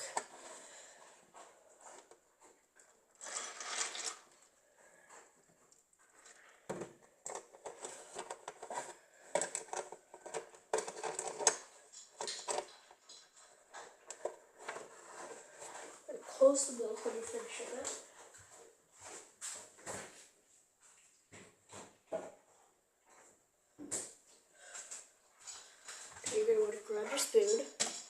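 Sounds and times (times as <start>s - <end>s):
container rustles and clicks: 1.4s - 18.2s.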